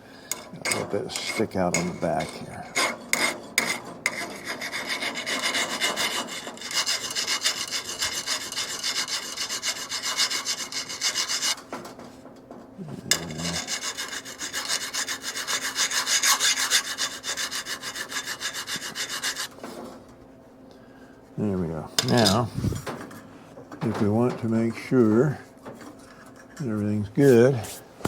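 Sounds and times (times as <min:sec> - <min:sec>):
hand file scraping steel: 0:00.3 - 0:11.6, 0:13.0 - 0:19.9.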